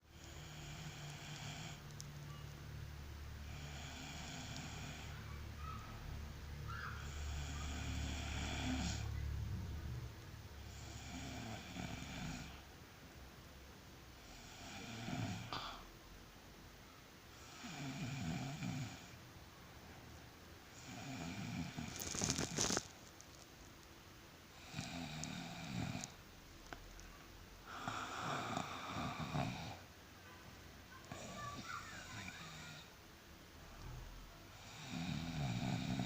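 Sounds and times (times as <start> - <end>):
person snoring: 0.1 - 1.8, 3.4 - 5.2, 7.0 - 9.1, 10.7 - 12.6, 14.2 - 15.9, 17.4 - 19.2, 20.8 - 22.6, 27.7 - 29.8, 34.6 - 36.0.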